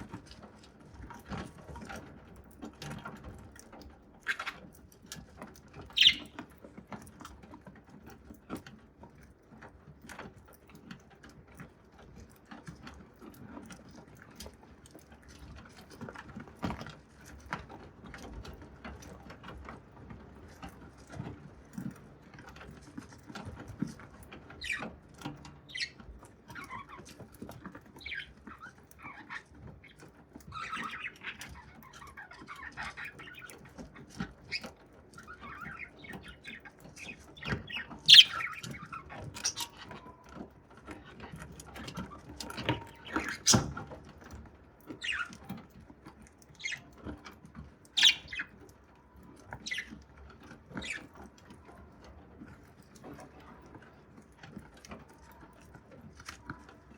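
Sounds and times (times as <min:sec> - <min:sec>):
soft bird chatter: 0:00.0 - 0:56.9
bird chirps: 0:05.9 - 0:06.4, 0:35.4 - 0:39.7, 0:47.9 - 0:48.5.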